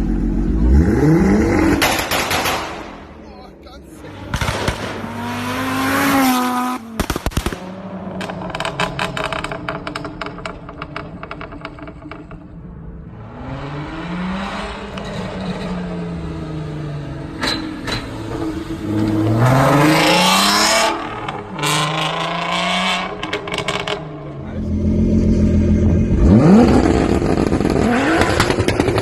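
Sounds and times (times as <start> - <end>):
car engine revving: 0.0 - 29.0
exhaust crackling: 14.6 - 29.0.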